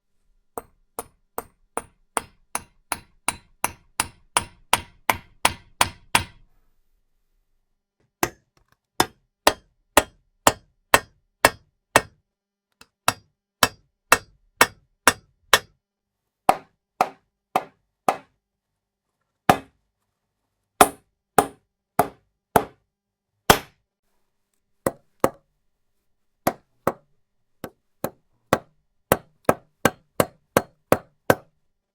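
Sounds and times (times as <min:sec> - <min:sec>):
hammer striking nails: 0:00.6 - 0:06.4, 0:08.2 - 0:12.2, 0:12.8 - 0:15.8, 0:16.5 - 0:18.4, 0:19.5 - 0:19.8, 0:20.8 - 0:22.8, 0:23.5 - 0:23.8, 0:24.9 - 0:25.4, 0:26.5 - 0:31.5.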